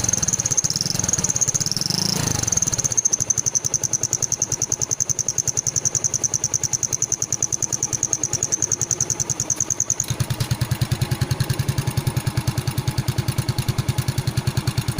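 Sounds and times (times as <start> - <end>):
pulsing exhaust whistle: 0.0 - 10.1
scooter engine idling: 0.0 - 14.9.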